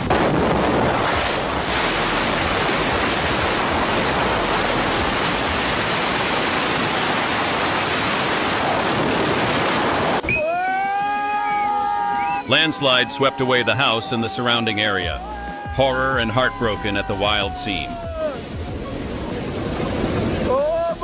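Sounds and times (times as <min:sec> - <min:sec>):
loud rushing noise: 0:00.0 - 0:10.2.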